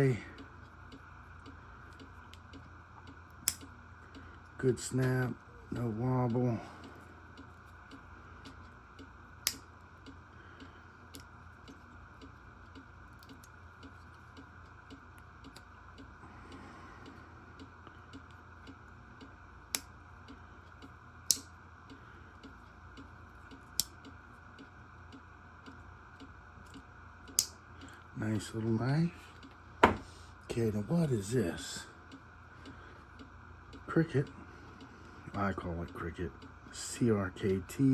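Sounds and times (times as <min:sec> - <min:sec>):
low room hum: 0:00.0 - 0:37.9
pocketknife blade clicking: 0:03.4 - 0:03.6.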